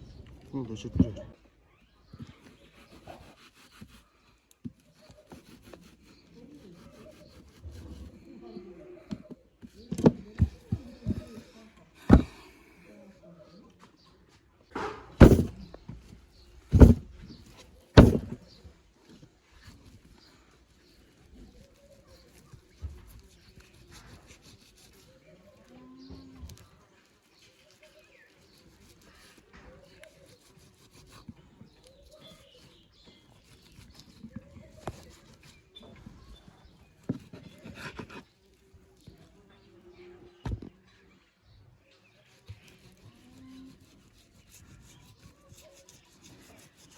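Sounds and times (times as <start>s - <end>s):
faint voices: 5.9s - 15.7s
heavy thuds: 12.1s - 12.4s, 15.2s - 15.7s, 16.7s - 17.2s, 18.0s - 18.4s.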